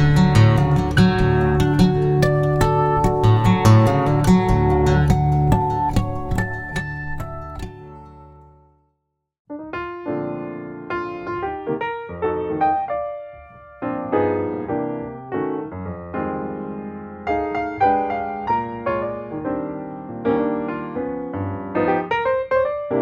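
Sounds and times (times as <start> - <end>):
solo piano melody: 0.0 - 8.8, 9.5 - 23.0.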